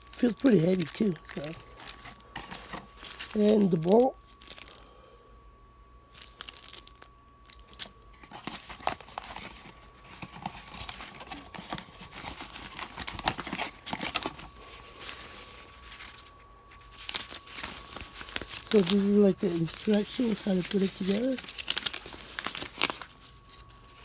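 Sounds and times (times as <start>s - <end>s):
packaging crinkling and rustling: 0.0s - 5.0s, 6.1s - 24.0s.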